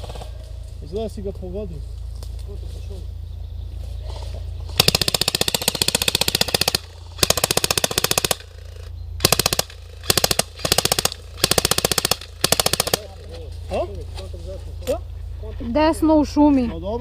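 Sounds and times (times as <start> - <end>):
airsoft guns firing bursts: 4.8 - 13.3.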